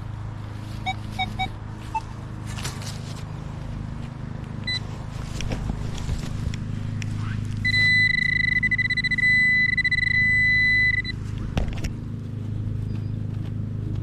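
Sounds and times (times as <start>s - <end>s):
low steady hum: 0.0s - 14.0s
metal detector beep: 0.8s - 2.1s, 7.6s - 11.2s
metal detector pulsing tone: 0.8s - 2.1s, 7.6s - 11.2s.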